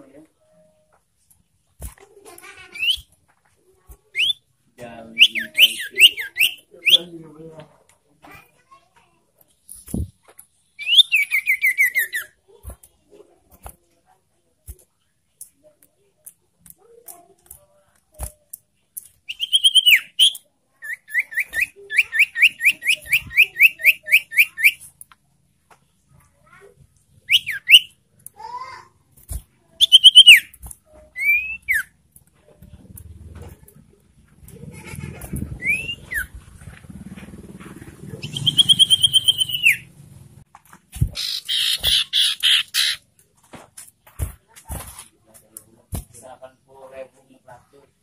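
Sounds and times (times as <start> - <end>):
bird whistling: 4.2 - 4.4, 5.2 - 7.1, 10.8 - 12.3, 19.3 - 24.8, 27.3 - 27.9, 29.8 - 30.5, 31.2 - 31.9, 35.6 - 36.3, 38.2 - 39.9.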